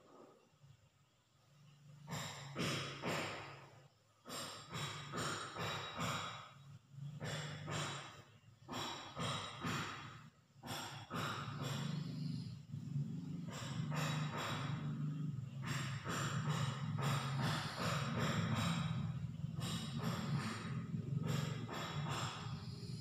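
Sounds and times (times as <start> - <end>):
person snoring: 10.8 - 18.6, 19.6 - 23.0.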